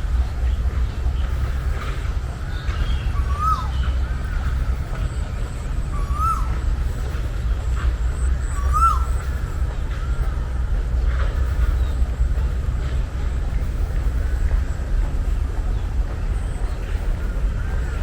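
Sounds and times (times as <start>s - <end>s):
steady low rumble: 0.0s - 18.0s
faint bird chirps and whistles: 0.4s - 10.4s
bird repeating rising-falling call: 2.8s - 4.6s, 5.8s - 7.1s, 8.4s - 9.5s.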